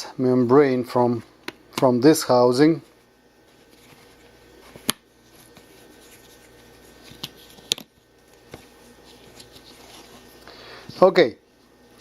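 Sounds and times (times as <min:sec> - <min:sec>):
faint rubbing: 0:08.6 - 0:10.4.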